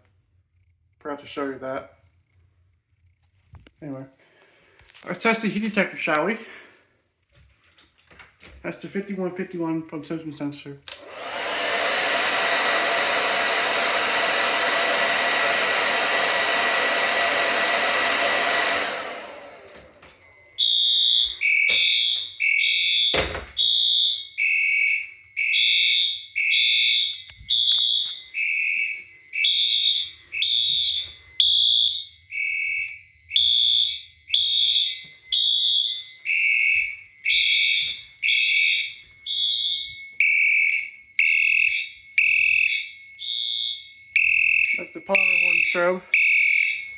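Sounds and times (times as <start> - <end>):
hot-air blower running: 10.9 - 20.3
fire alarm two-tone pulses: 11.2 - 46.9.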